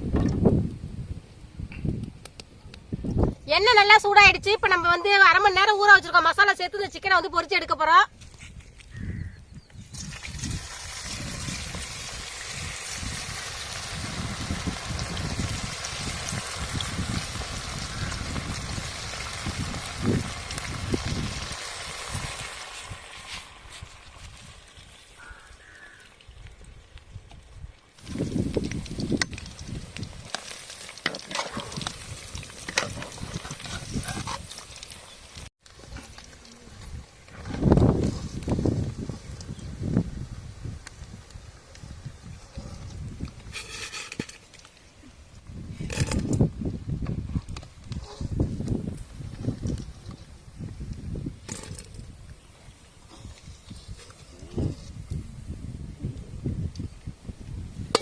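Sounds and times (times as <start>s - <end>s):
chicken deep-frying sizzle: 9.9s - 26.1s, 28.0s - 43.5s.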